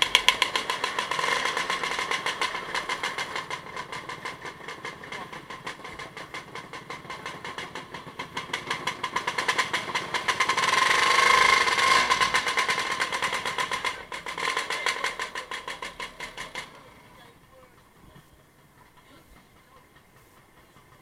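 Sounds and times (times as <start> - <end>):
engine running with pulsing beat: 0.0 - 21.0.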